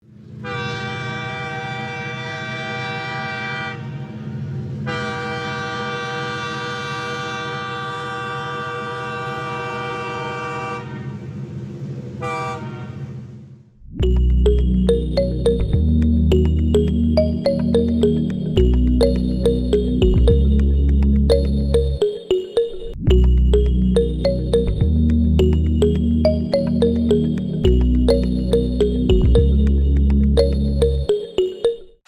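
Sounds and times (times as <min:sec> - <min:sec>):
train horn blasts: 0:00.4 - 0:11.3, 0:12.2 - 0:13.0
music: 0:13.9 - 0:32.0.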